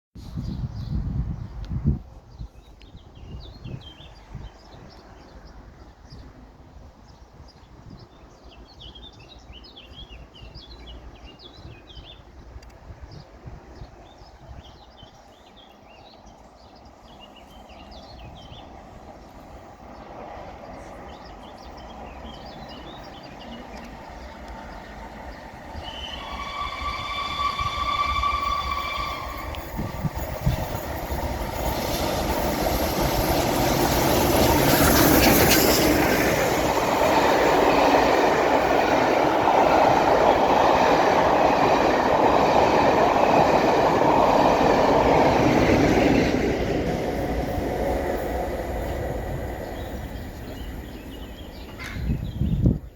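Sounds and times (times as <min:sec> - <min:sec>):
steam train passing at speed: 0:16.8 - 0:52.8
steady high tone: 0:25.7 - 0:31.8.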